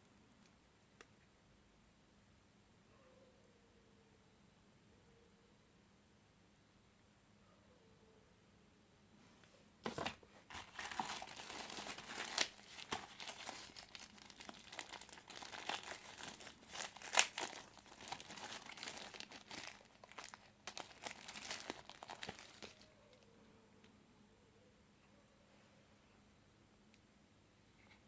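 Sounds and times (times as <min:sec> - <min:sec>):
plastic packaging crinkling: 0:09.8 - 0:22.9.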